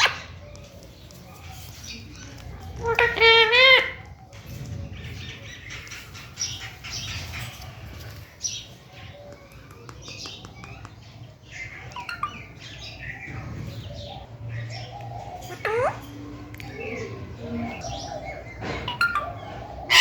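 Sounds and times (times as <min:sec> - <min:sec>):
parrot chirping and clicking: 0:09.3 - 0:12.4, 0:18.9 - 0:19.3.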